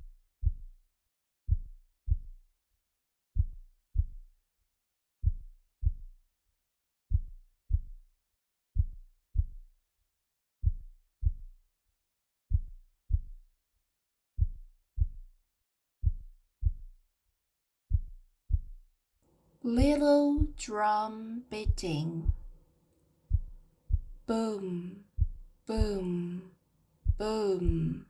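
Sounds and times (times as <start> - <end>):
heartbeat thumps: 23.3 - 26.4, 27.1 - 28.0.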